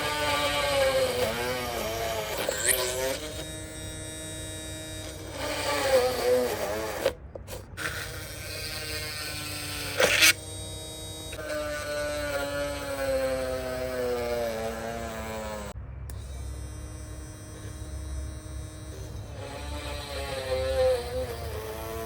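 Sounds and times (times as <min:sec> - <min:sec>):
mini drill motor whirring: 0:00.0 - 0:22.0.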